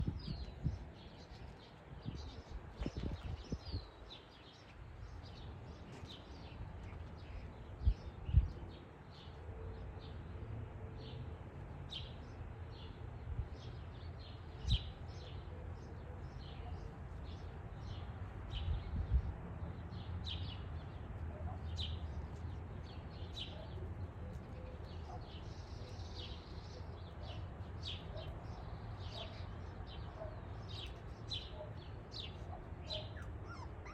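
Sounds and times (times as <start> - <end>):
birds chirping: 20.2 - 33.9.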